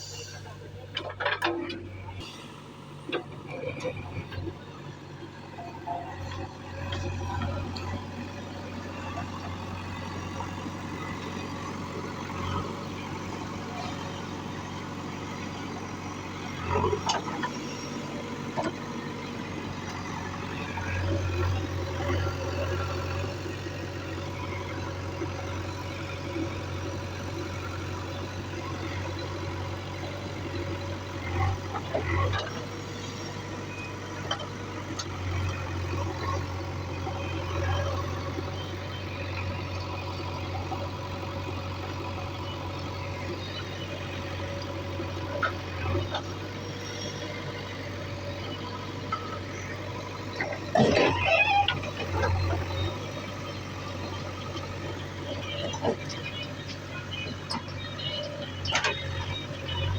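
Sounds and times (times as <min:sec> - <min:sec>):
diesel engine revving: 0:00.0 - 0:59.9.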